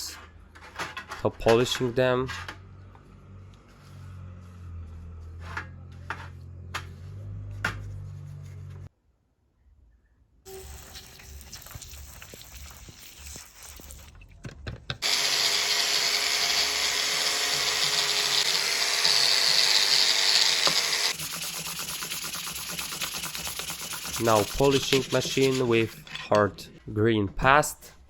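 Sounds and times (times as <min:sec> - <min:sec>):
power tool grinding metal: 0:15.0 - 0:21.2
rhythmic sandpaper rubbing: 0:21.0 - 0:25.8.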